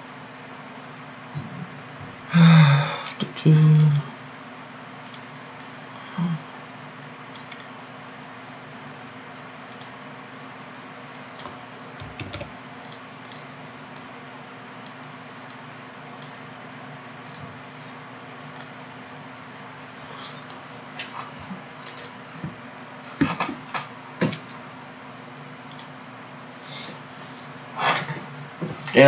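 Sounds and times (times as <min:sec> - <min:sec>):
steady low hum: 0:00.0 - 0:29.0
computer keyboard typing: 0:07.4 - 0:07.7, 0:11.2 - 0:13.4.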